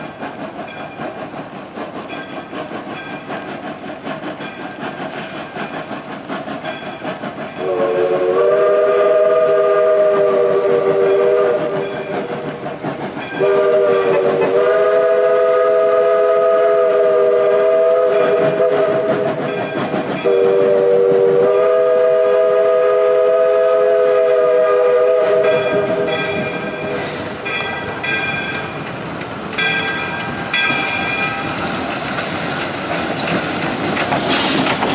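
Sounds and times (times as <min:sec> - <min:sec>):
steam locomotive running: 0:00.0 - 0:34.9
steam whistle blasts: 0:07.6 - 0:12.1, 0:13.4 - 0:19.4, 0:20.2 - 0:27.3.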